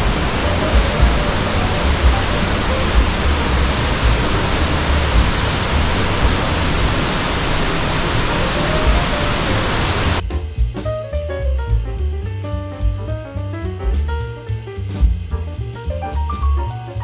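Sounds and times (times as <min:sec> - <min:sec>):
waterfall rushing: 0:00.0 - 0:10.2.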